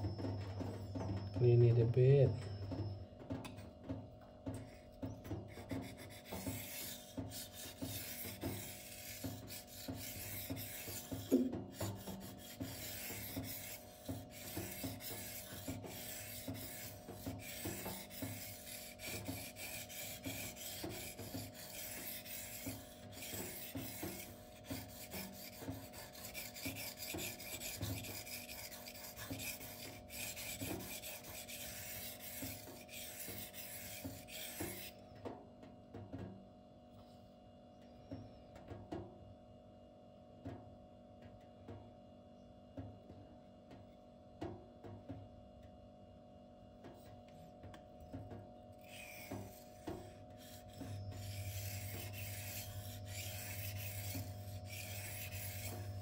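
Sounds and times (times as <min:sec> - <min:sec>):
knife scraping on whetstone: 0:05.5 - 0:35.0, 0:48.8 - 0:56.0.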